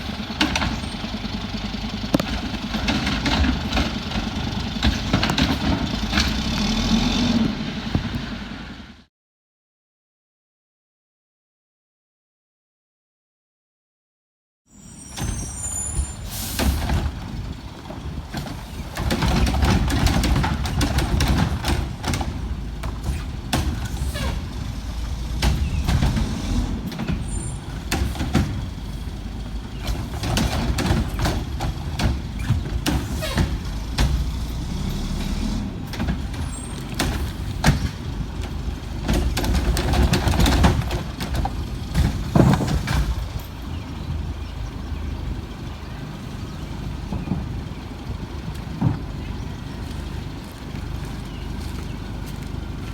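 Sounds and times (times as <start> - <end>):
garbage truck engine rumbling: 0.0 - 9.1, 14.7 - 52.9
metal knocks and clanks: 16.7 - 43.8.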